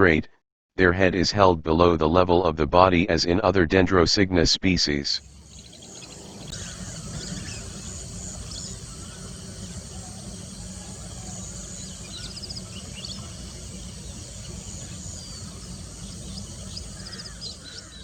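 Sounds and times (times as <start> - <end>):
bird chirps and trills: 5.2 - 18.0
insects: 5.2 - 18.0.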